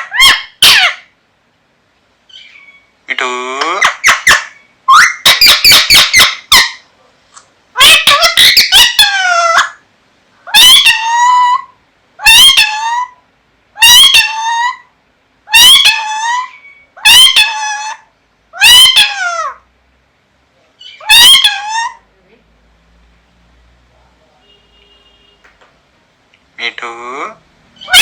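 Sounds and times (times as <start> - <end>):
parrot calling loudly: 0.0 - 1.2, 2.3 - 6.9, 7.8 - 9.8, 10.4 - 19.7, 20.8 - 22.1, 26.6 - 28.0.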